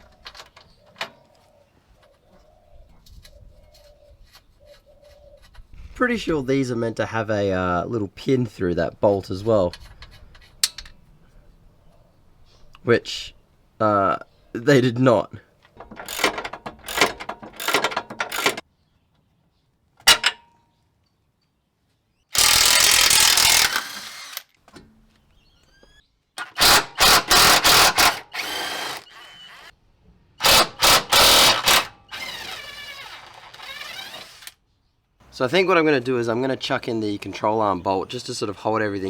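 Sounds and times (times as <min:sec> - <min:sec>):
power tool bursts: 0:22.4 - 0:24.5, 0:26.4 - 0:29.7, 0:30.4 - 0:34.6.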